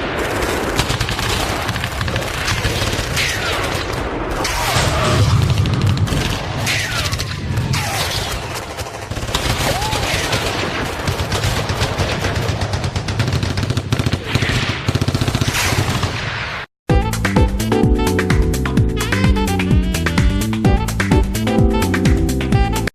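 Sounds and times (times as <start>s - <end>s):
rapid machine-gun and rifle fire: 0.0s - 16.7s.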